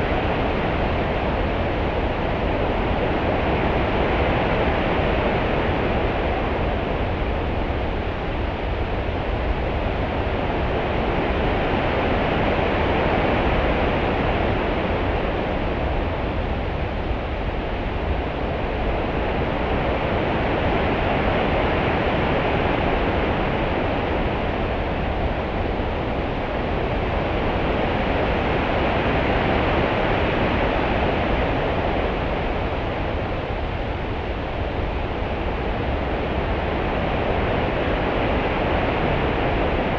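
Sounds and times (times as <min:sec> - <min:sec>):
constant low rumble: 0:00.0 - 0:39.9.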